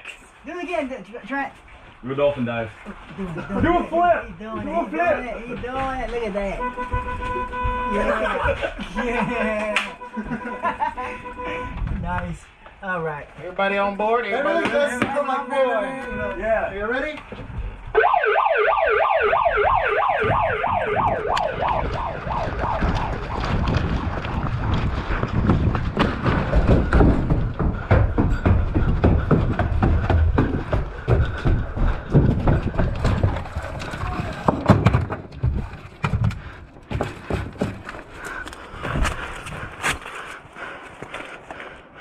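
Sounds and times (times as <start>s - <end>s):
thumps and clatter of people moving: 1.6s - 10.5s, 14.3s - 17.9s, 19.6s - 41.8s
electronic siren warbling: 17.9s - 23.8s
rumbling noise: 19.3s - 39.8s.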